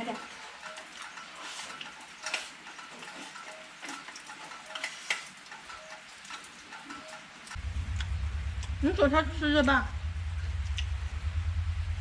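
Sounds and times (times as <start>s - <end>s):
rain hissing: 4.8s - 12.0s.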